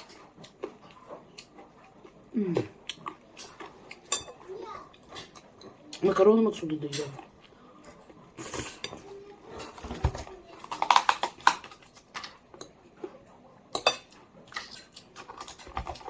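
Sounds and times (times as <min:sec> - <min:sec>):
cutlery scraping a plate: 0:06.9 - 0:10.0.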